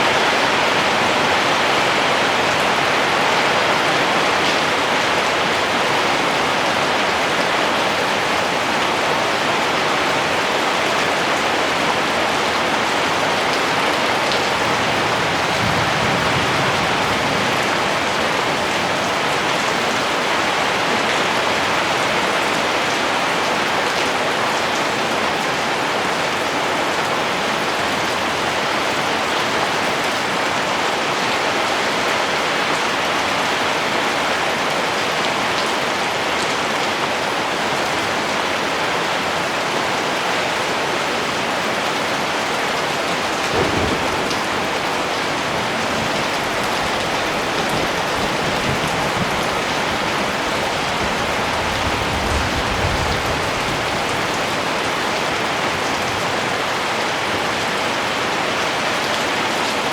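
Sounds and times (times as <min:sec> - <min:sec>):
heavy rain: 0:00.0 - 0:59.9.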